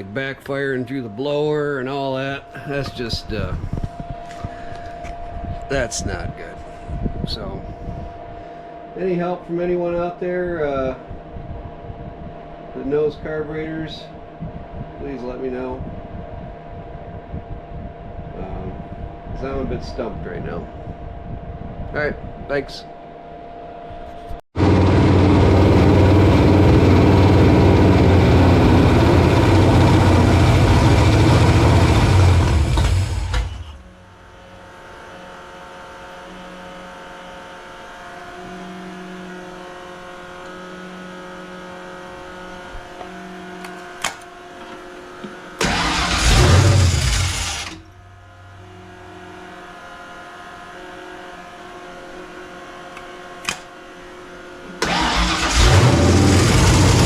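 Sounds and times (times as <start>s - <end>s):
car engine firing and dying: 24.6s - 34.1s, 45.6s - 47.9s, 54.8s - 57.0s.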